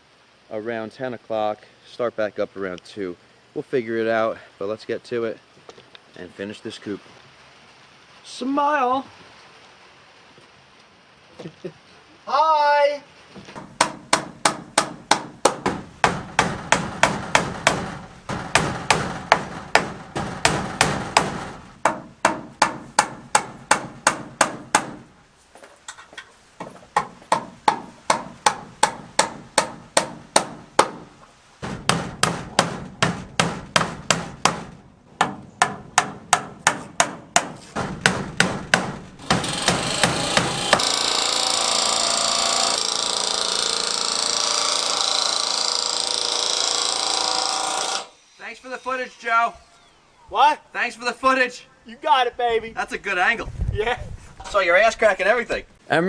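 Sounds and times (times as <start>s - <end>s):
steady hissing noise: 0.0s - 56.0s
hammer driving nails into wood: 13.5s - 25.1s, 26.6s - 48.1s.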